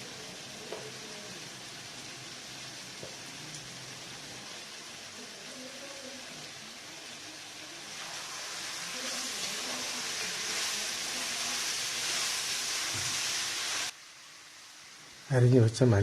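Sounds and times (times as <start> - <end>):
food sizzling in a pot: 0.0 - 16.0.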